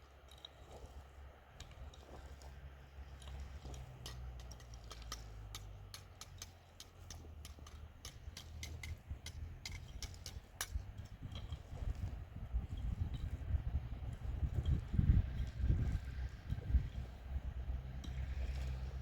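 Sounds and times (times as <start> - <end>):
steady low rumble: 0.0 - 19.0
sharp clicks and ticks: 3.2 - 11.6.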